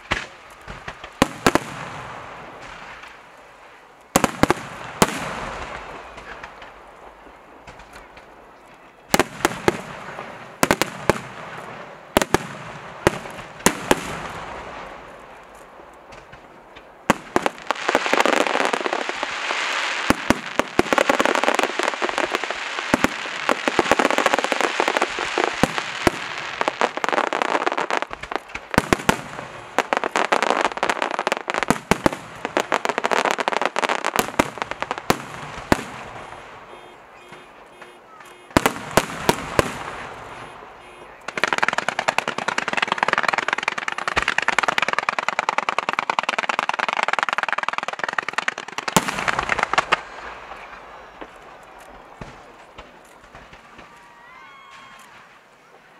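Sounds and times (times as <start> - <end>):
dense fireworks crackling: 0.0 - 55.9
fireworks shells bursting: 32.0 - 45.6.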